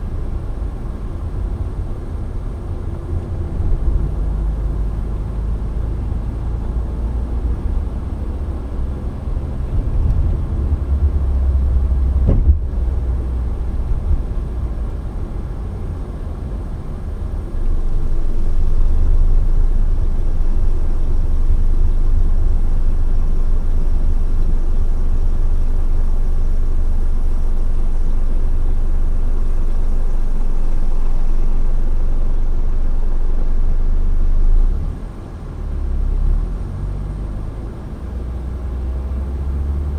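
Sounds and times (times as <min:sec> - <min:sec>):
car engine and tyres rumbling: 0:00.0 - 0:39.9
brief knock: 0:12.2 - 0:12.6.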